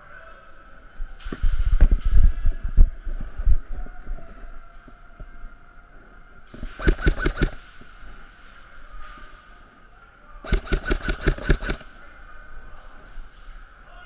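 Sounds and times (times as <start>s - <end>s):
airsoft rifle shots: 6.5s - 7.8s, 10.4s - 11.9s.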